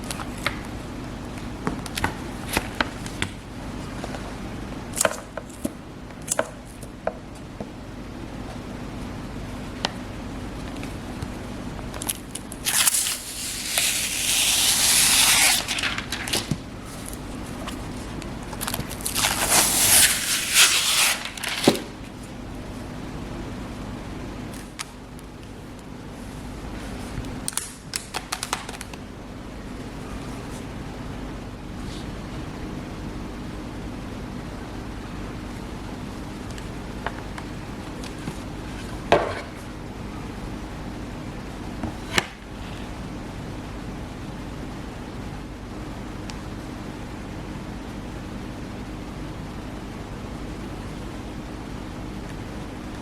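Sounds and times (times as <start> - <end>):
steady low hum: 0.0 - 53.0
packaging rustling and scraping: 12.6 - 22.2.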